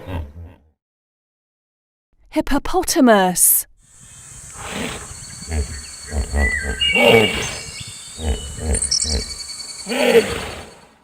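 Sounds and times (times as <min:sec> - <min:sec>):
high chirps: 0:04.0 - 0:10.8
hippopotamus grunting: 0:04.0 - 0:10.9.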